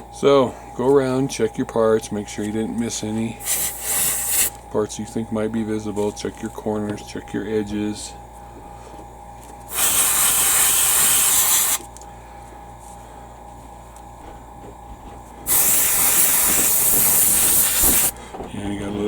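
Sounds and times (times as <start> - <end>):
airbrush spraying hiss: 3.4 - 4.6, 9.7 - 11.9, 15.5 - 18.2.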